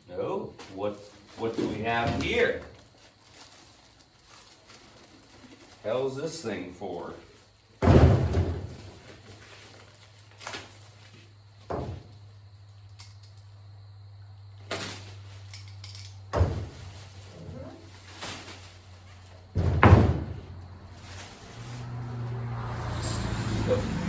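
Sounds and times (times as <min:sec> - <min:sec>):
knocks and thuds of tool cabinet: 0:07.8 - 0:09.2, 0:11.6 - 0:12.1, 0:16.3 - 0:17.6, 0:19.5 - 0:20.6.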